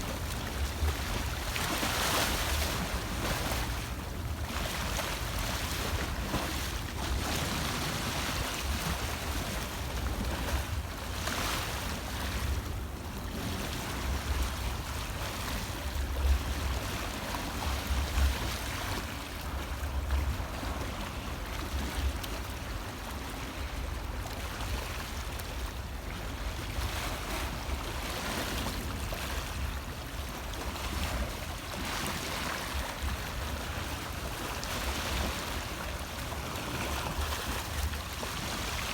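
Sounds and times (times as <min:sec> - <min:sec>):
sea waves washing onto shore: 0:25.2 - 0:38.9.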